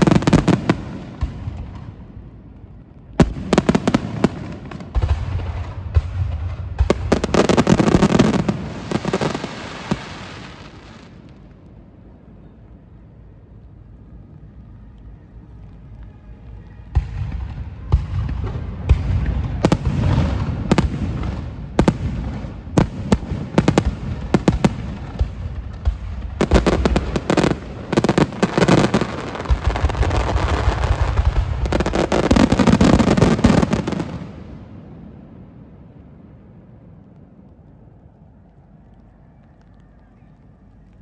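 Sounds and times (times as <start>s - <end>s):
rapid firework bangs and crackle: 0.0s - 2.6s, 3.2s - 11.4s, 16.9s - 35.0s
firework booms: 3.2s - 11.2s, 16.9s - 35.0s.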